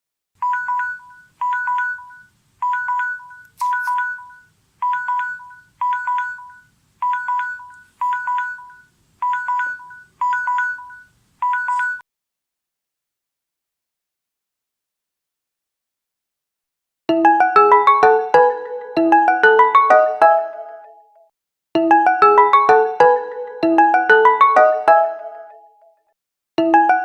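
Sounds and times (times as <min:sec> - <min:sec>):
phone alarm beeps on two pitches: 0:00.4 - 0:12.0.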